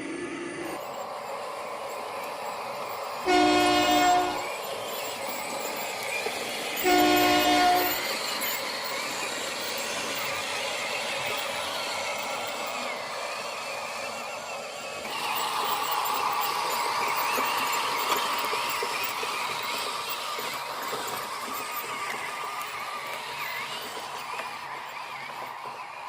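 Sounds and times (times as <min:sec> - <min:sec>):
small electric motors whining: 0:00.0 - 0:26.0.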